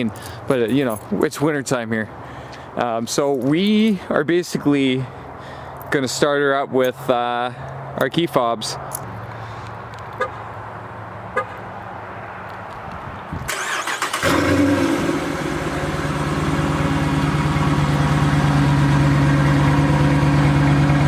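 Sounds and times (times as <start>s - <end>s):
loud car engine idling: 14.2s - 21.0s.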